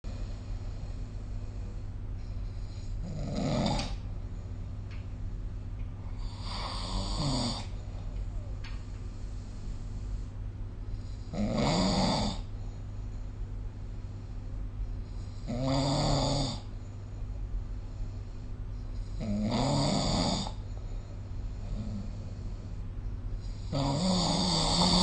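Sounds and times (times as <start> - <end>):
low background hum: 0.0 - 25.0
person snoring: 2.5 - 4.0, 6.1 - 7.8, 11.3 - 12.5, 15.2 - 16.7, 19.1 - 20.6, 23.4 - 25.0.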